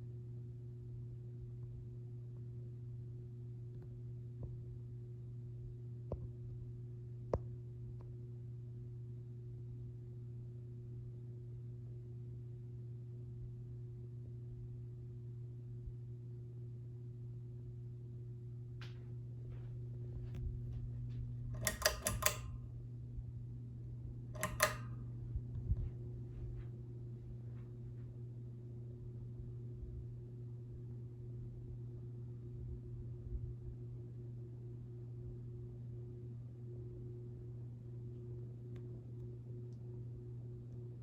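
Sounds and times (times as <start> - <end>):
ceiling fan motor humming: 18.0 - 41.0
light clicks: 21.5 - 22.6, 24.4 - 25.0.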